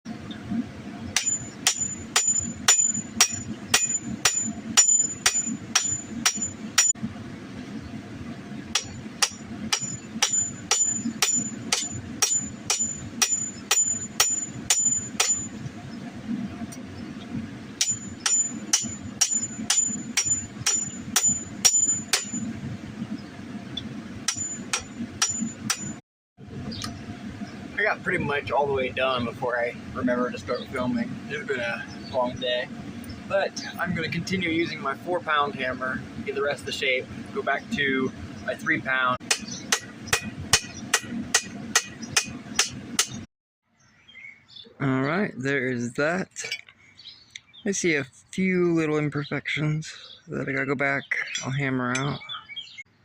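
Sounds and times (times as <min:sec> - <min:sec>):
steady low hum: 0:00.1 - 0:43.3
hammer striking steel on anvil: 0:01.2 - 0:07.0, 0:08.7 - 0:15.6, 0:17.8 - 0:22.4, 0:24.3 - 0:26.0, 0:39.2 - 0:43.3.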